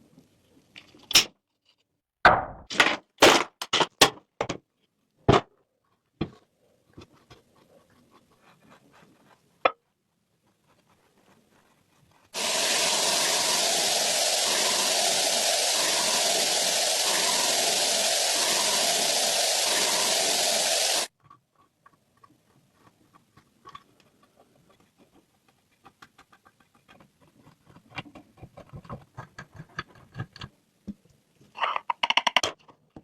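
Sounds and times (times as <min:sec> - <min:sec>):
loud steady whooshing: 0:12.4 - 0:21.1.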